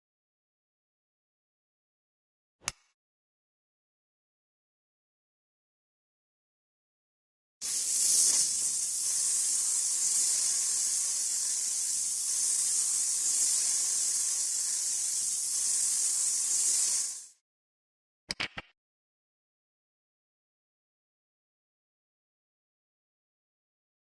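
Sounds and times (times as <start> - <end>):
compressed air hissing: 7.6 - 17.4.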